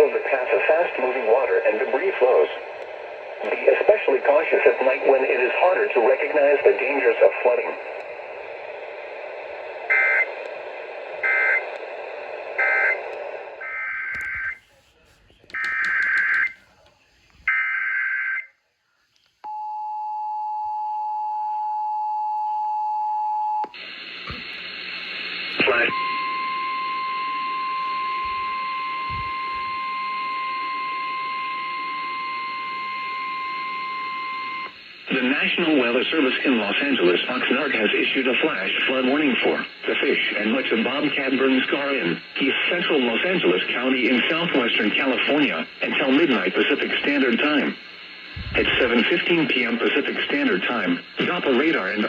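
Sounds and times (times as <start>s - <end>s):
radio hiss: 0.0s - 17.6s, 23.7s - 26.4s, 31.9s - 52.0s.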